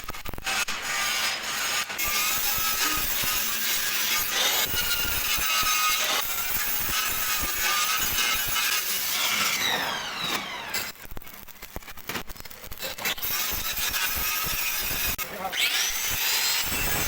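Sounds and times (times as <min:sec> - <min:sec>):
power tool winding down: 0:04.8 - 0:11.0.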